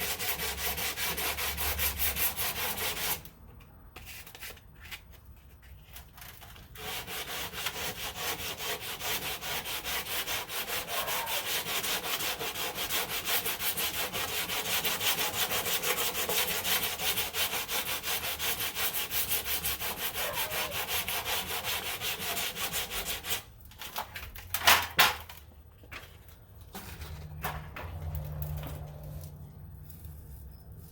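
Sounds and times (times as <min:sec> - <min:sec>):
sandpaper rubbing on filler: 0:00.0 - 0:03.3, 0:06.8 - 0:23.5.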